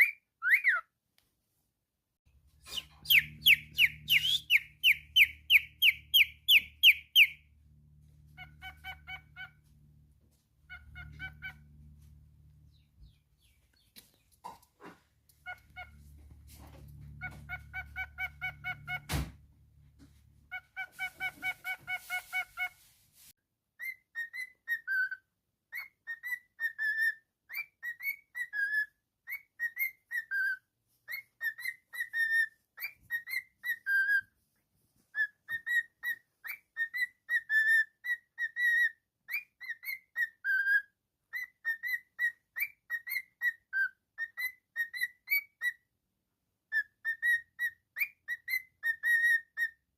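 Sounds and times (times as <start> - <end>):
cockatiel whistling: 0.0 - 0.9, 2.7 - 7.4, 8.4 - 9.5, 10.7 - 11.6, 20.5 - 22.7, 23.8 - 34.3, 35.1 - 45.8, 46.7 - 49.8.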